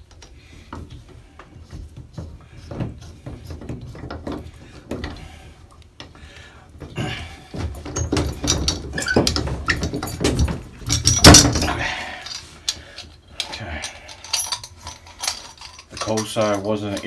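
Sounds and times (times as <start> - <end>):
metal tools clinking and knocking: 7.6 - 17.0.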